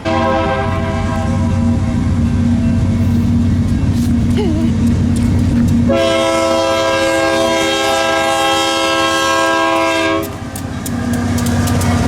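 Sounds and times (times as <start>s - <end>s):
locomotive air horn blast: 0.0s - 2.2s, 5.9s - 10.4s
wheels clicking over rail joints: 0.0s - 6.0s, 6.9s - 12.0s
diesel locomotive engine running: 0.0s - 12.0s
train rumbling: 0.0s - 12.0s.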